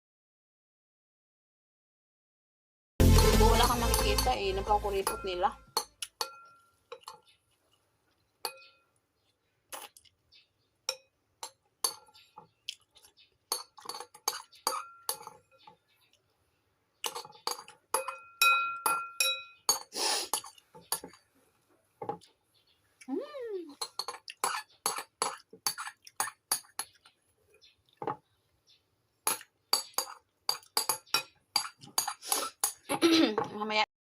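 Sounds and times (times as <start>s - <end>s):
utensil clinking against dish: 5.0s - 7.3s, 10.9s - 12.3s, 13.5s - 15.7s, 17.0s - 21.2s, 29.3s - 33.5s.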